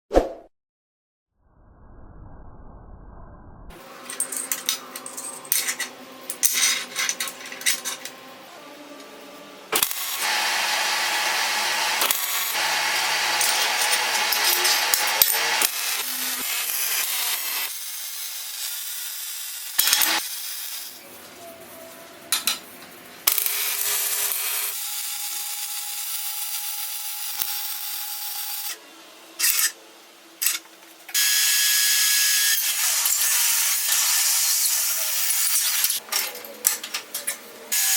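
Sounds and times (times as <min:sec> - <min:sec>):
power tools working metal: 0:03.8 - 0:21.0, 0:23.2 - 0:28.8, 0:30.4 - 0:36.0, 0:37.7 - 0:37.9
metal parts clinking: 0:04.0 - 0:08.2
angle grinder on metal: 0:09.8 - 0:21.0, 0:23.3 - 0:28.8, 0:31.2 - 0:36.0.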